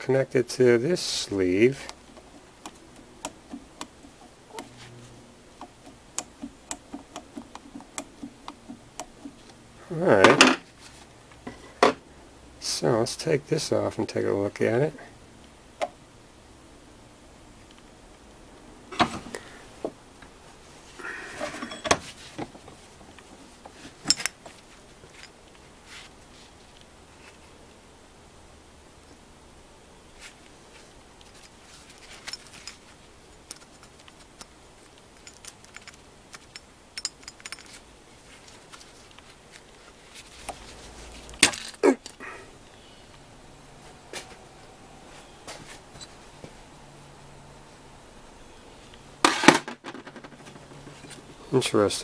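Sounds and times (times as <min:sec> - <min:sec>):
metal parts clicking: 0:32.0 - 0:39.2.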